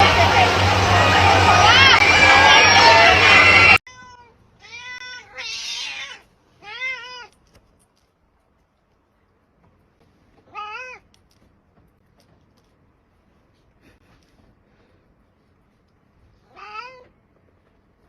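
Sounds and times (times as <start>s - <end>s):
loud mixed voices: 0.0s - 3.8s
cat meowing: 3.9s - 7.4s, 10.4s - 11.0s, 16.4s - 17.1s.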